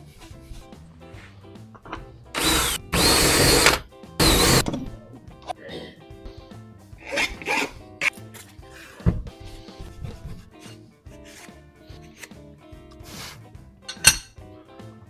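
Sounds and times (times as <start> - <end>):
soft background music: 0.0 - 15.0
power tool motor whine: 2.4 - 4.8.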